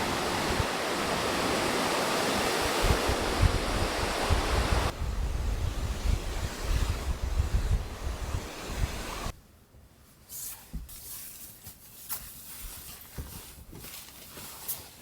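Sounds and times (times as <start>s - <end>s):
wind blowing across microphone: 0.0s - 9.4s.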